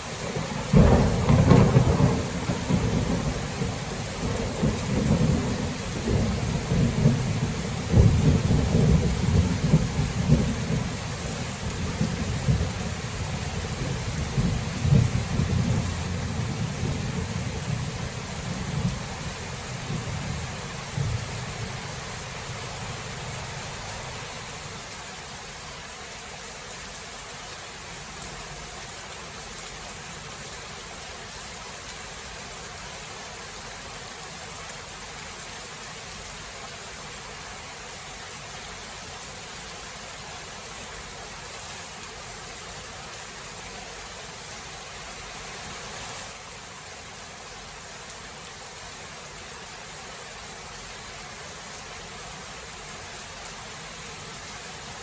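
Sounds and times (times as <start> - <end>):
steady rain falling: 0.0 - 55.0
low thunder rumble: 0.2 - 23.6.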